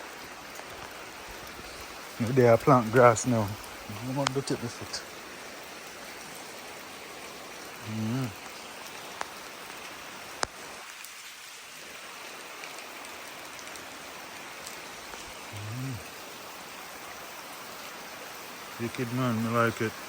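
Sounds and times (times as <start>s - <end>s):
light rain drizzle: 0.0s - 20.0s
low voice-like sound: 7.8s - 8.4s, 15.5s - 16.1s.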